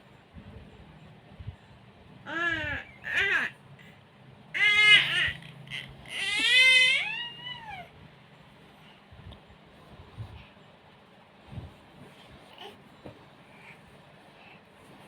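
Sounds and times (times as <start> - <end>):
high-pitched wailing cries: 4.6 - 7.9.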